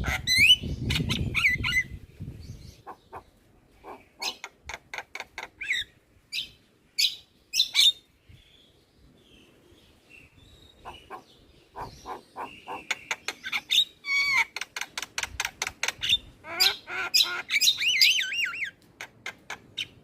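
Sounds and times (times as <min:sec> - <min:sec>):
bird chattering squawks and whistles: 0:02.7 - 0:08.0, 0:10.7 - 0:20.0.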